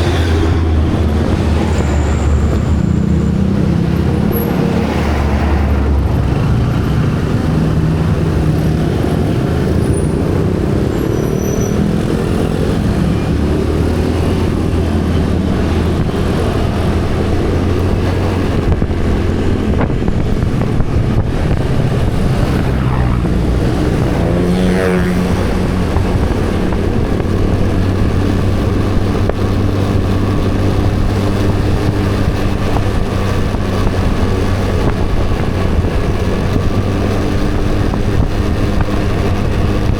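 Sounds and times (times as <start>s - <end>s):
road noise: 0.0s - 39.9s
vehicle engine running: 12.0s - 39.9s.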